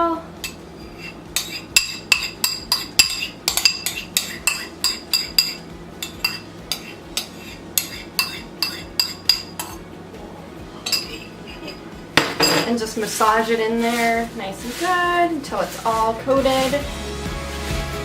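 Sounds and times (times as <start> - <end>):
metal utensil clinking on dish: 0.4 - 9.8, 10.8 - 12.8.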